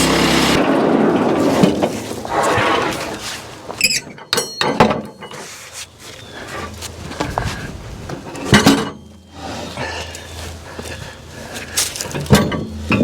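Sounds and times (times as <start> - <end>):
boards scraping: 0.0 - 3.8.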